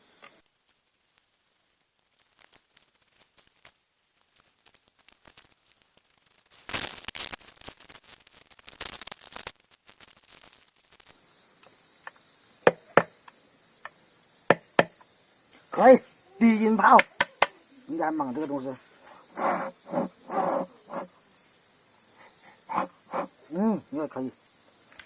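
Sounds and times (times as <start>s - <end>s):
crickets chirping: 0.0s - 25.0s
handling and rustling: 0.3s - 11.2s
sharp knocks: 12.6s - 13.1s
scraping rustling bursts: 19.3s - 21.1s.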